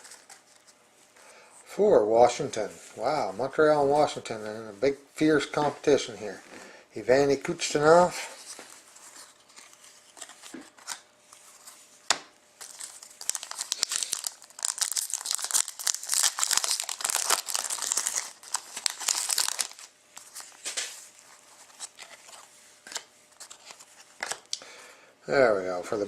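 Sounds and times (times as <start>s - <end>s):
plastic wrapper tearing and crinkling: 12.6s - 21.0s.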